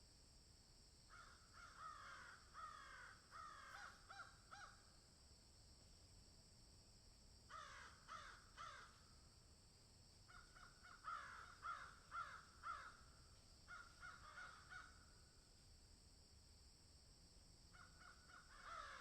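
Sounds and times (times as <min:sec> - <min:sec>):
steady high hiss: 0:00.0 - 0:01.2
crows cawing: 0:01.1 - 0:04.8, 0:07.5 - 0:09.0, 0:10.3 - 0:15.1, 0:17.8 - 0:19.0.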